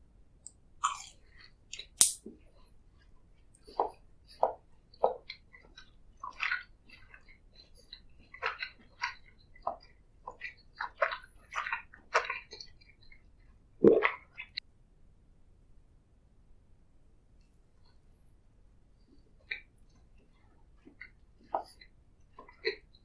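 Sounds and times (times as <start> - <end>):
chewing food: 0.8 - 1.2, 3.6 - 13.2
sharp click: 1.8 - 2.2.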